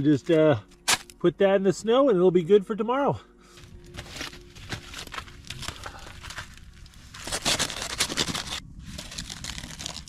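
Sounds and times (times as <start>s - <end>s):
crinkling and crunching: 3.5s - 10.0s.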